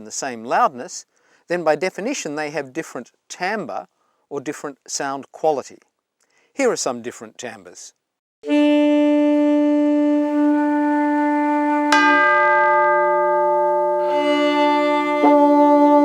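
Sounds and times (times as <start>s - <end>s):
held instrument note: 8.4s - 16.0s
ringing plucked instrument notes: 10.3s - 16.0s.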